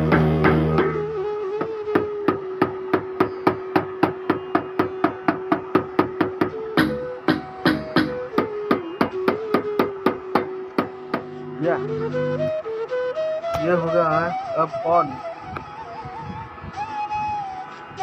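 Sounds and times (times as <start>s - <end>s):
electronic percussion hits: 0.0s - 1.1s, 6.8s - 8.2s
held synth tone: 0.0s - 1.3s, 10.9s - 12.7s.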